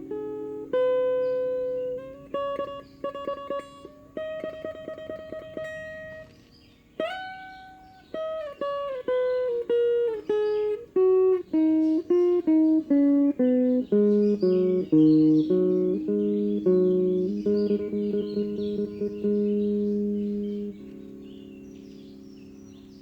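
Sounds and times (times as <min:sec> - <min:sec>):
plucked lute notes: 0:00.0 - 0:23.0.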